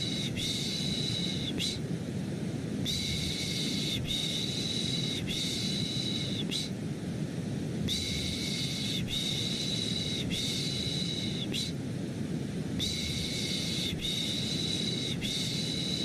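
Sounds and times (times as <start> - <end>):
low rumbling white noise: 0.0 - 16.0.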